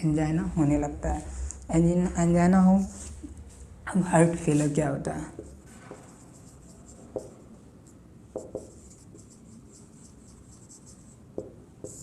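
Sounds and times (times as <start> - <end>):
pen scratching handwriting: 8.4 - 12.0.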